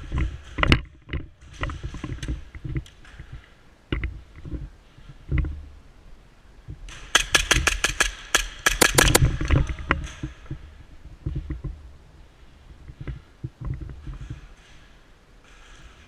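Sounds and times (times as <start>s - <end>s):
rapid airsoft gunfire: 7.0s - 9.3s
scattered clicks: 7.2s - 9.2s.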